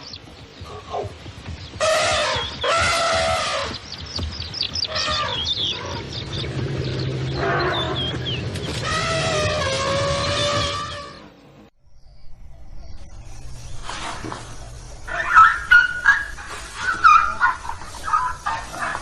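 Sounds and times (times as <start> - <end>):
elephant trumpeting: 1.8 - 3.8, 4.8 - 6.1, 7.2 - 11.3, 15.1 - 19.0
elephant squeals: 4.9 - 6.0, 8.8 - 11.3, 15.1 - 19.0.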